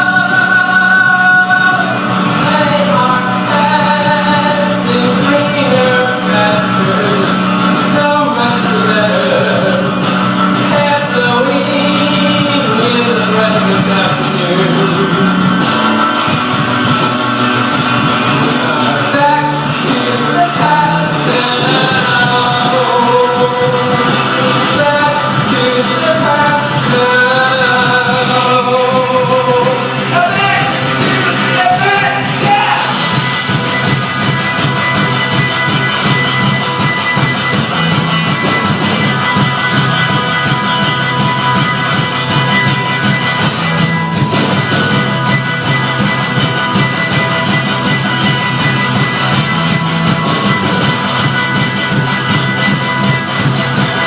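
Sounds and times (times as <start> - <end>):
person singing: 0.0 - 15.8, 18.2 - 35.8
rock music: 0.0 - 54.0
steady drum beat: 0.0 - 54.0.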